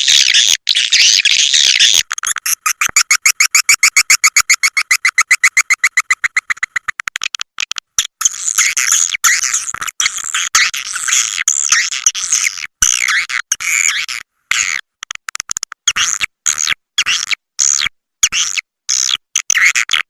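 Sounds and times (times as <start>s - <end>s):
swiftlets twittering: 1.5s - 7.0s
fast train of sharp chirps: 2.7s - 6.8s.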